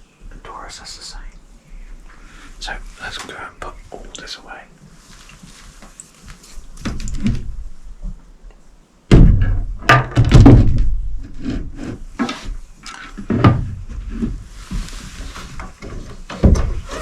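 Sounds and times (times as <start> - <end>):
heavy thud: 9.1 - 11.0.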